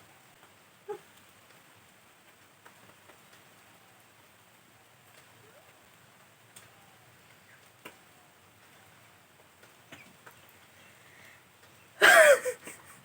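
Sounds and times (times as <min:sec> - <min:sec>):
faint ticks and clicks: 0:00.3 - 0:03.7, 0:05.0 - 0:08.8, 0:09.4 - 0:11.9.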